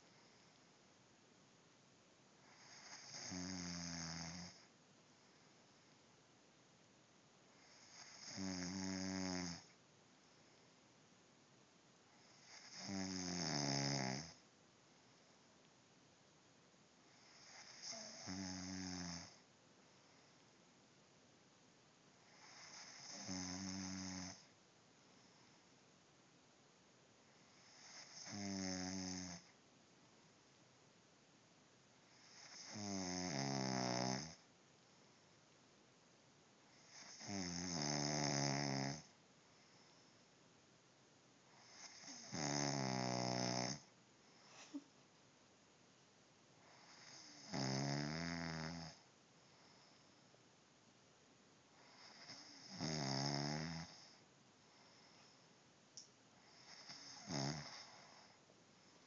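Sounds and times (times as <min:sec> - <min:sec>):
person snoring: 0:02.4 - 0:04.7, 0:07.6 - 0:09.7, 0:12.2 - 0:14.4, 0:17.1 - 0:19.4, 0:22.2 - 0:24.5, 0:27.5 - 0:29.5, 0:32.1 - 0:34.4, 0:36.8 - 0:39.1, 0:41.5 - 0:44.8, 0:46.6 - 0:49.0, 0:51.8 - 0:54.2, 0:56.4 - 0:58.4.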